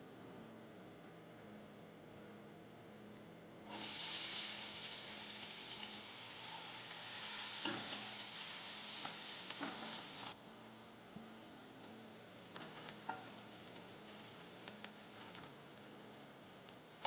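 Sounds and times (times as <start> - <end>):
food sizzling in hot oil: 3.7 - 10.4.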